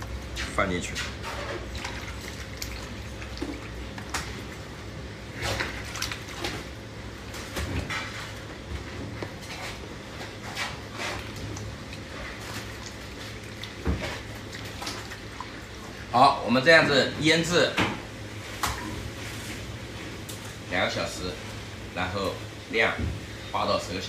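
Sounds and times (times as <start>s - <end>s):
liquid splashing and sloshing: 0.0s - 16.2s.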